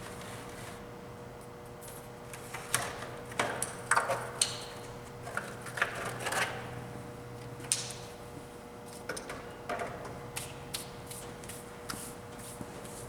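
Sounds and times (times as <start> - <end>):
steady electric hum: 0.0 - 13.0.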